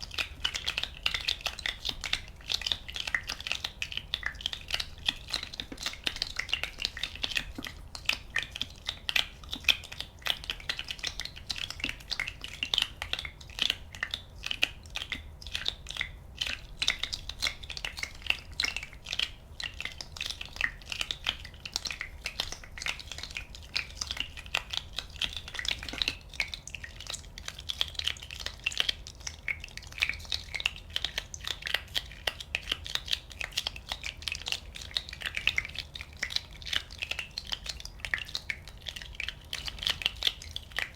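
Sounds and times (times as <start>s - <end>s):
small bubbles popping: 0.0s - 40.9s.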